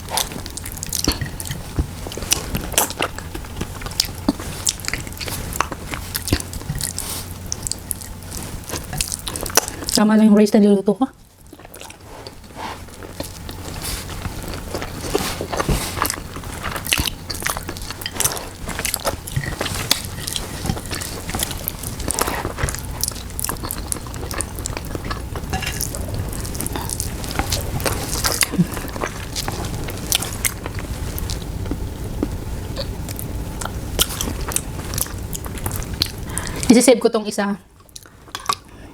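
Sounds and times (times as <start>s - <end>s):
chewing and lip-smacking: 0.0s - 10.0s, 11.4s - 36.7s, 37.8s - 38.8s
steady low hum: 0.0s - 38.9s.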